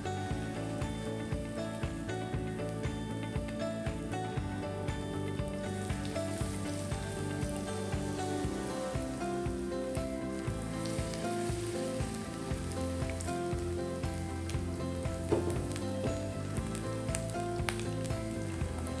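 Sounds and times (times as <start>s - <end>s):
background music: 0.0s - 19.0s
food sizzling in frying pan: 5.6s - 19.0s.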